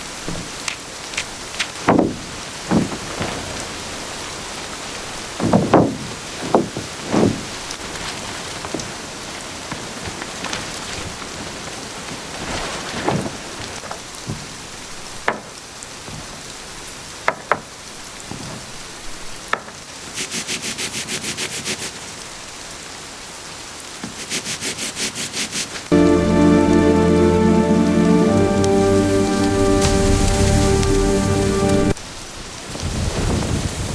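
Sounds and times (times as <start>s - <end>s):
steady rain: 0.0s - 33.9s
music: 25.9s - 32.0s.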